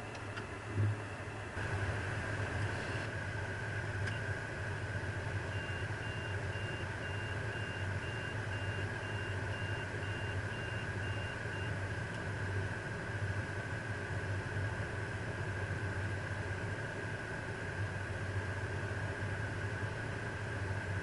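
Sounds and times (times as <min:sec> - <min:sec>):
low engine hum: 0:00.0 - 0:21.0
steady high machinery tone: 0:01.0 - 0:14.7
short electronic warning beeps: 0:05.5 - 0:11.7.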